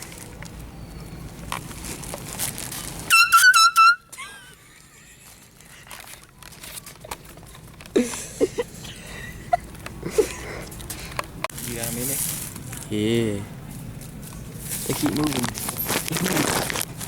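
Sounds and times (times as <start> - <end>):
air horn blasts: 3.1 - 4.1.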